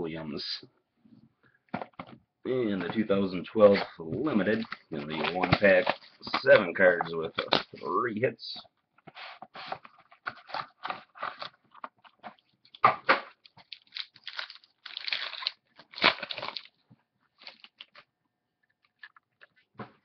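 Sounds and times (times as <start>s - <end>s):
plastic wrapping crinkling and tearing: 4.3s - 6.7s, 10.2s - 18.1s.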